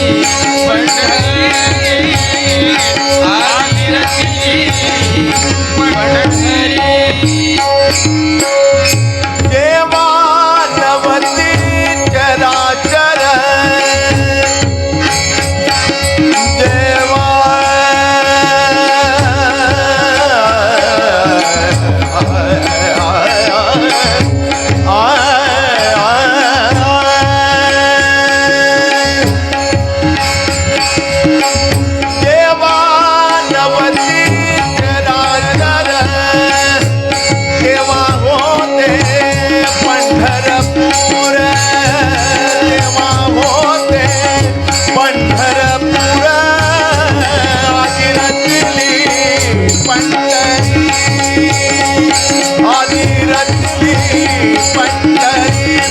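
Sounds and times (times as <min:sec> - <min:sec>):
hand drum rhythm: 0:00.0 - 0:10.2, 0:33.8 - 0:55.9
person singing ornamented melody: 0:00.0 - 0:55.9
steady held tones: 0:00.0 - 0:55.9.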